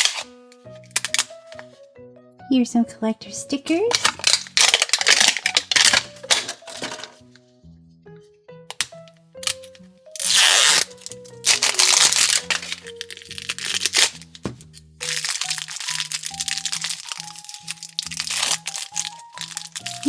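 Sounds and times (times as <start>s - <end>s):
plastic packaging crinkling: 0.0s - 0.3s, 0.9s - 1.6s, 3.9s - 7.2s, 9.4s - 20.0s
light background music: 0.0s - 20.0s.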